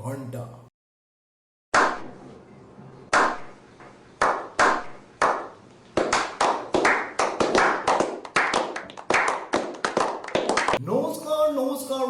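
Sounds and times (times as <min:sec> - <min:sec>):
sharp hand claps: 0:01.8 - 0:02.1, 0:03.1 - 0:10.8.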